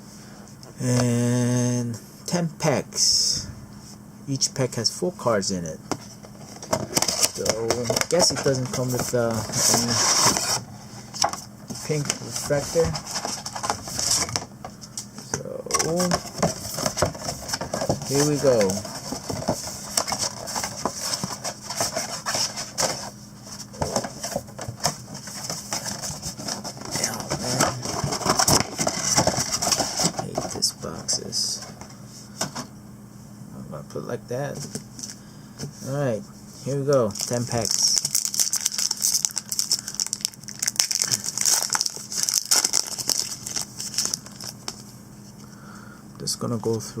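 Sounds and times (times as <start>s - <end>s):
cardboard packaging rubbing and scraping: 6.0s - 14.4s, 15.9s - 31.8s, 36.6s - 44.5s
foil wrappers crinkling: 6.4s - 14.5s, 15.8s - 30.8s, 37.0s - 44.9s.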